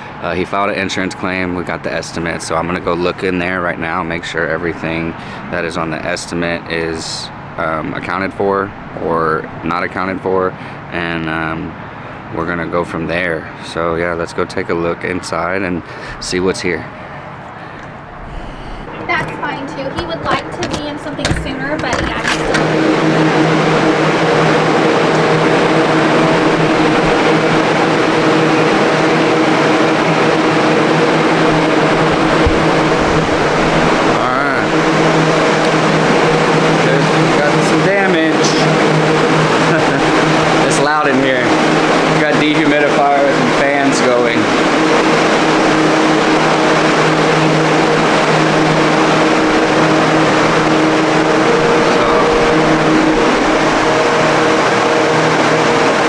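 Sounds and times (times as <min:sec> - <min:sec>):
rush of air from fans: 0:00.0 - 0:56.0
motor hum: 0:15.9 - 0:56.0.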